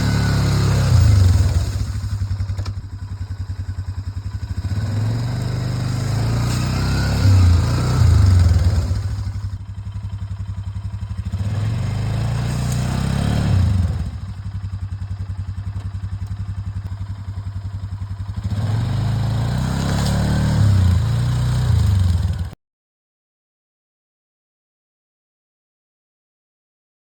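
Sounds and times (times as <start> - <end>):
atv engine revving and idling: 0.0 - 22.6.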